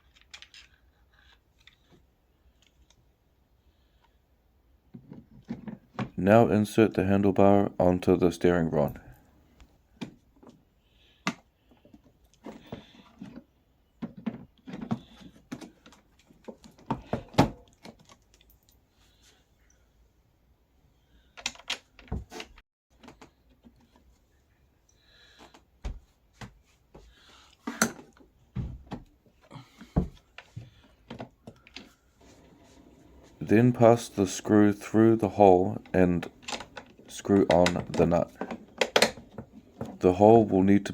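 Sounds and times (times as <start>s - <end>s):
plastic parts knocking and clicking: 0.0s - 2.0s, 4.9s - 6.2s, 11.2s - 18.3s, 21.4s - 24.0s, 35.8s - 40.0s.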